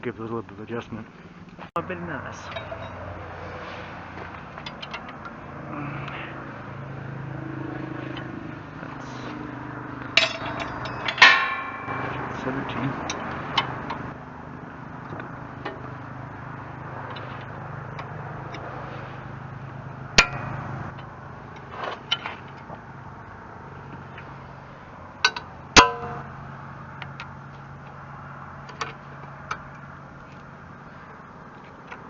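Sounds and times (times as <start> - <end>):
wrench clinking on metal: 2.4 - 3.1, 4.6 - 5.4, 10.1 - 12.3, 25.2 - 26.3.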